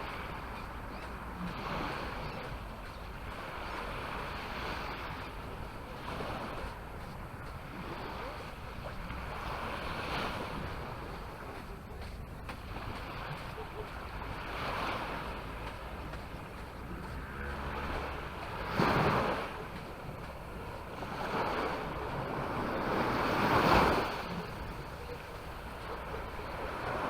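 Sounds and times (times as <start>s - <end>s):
small waves washing onto beach: 0.0s - 27.0s
wind rumbling on microphone: 0.0s - 27.0s.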